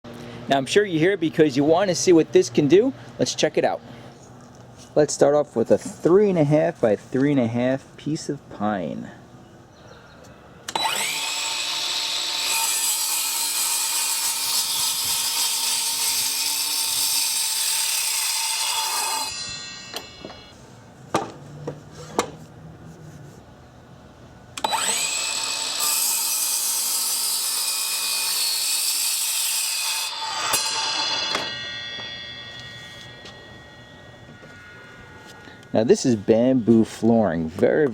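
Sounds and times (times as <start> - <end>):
miter saw cutting wood: 10.7 - 20.5, 24.6 - 37.1.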